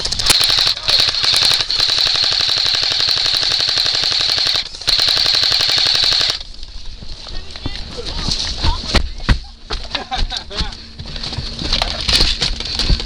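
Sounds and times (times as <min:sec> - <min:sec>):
airsoft gun firing full auto: 0:00.0 - 0:06.4
steady high whine: 0:00.0 - 0:13.0.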